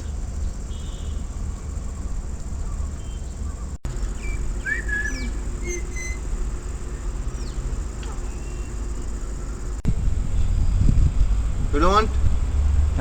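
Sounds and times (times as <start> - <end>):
parrot chirping and squeaking: 4.0 - 6.4.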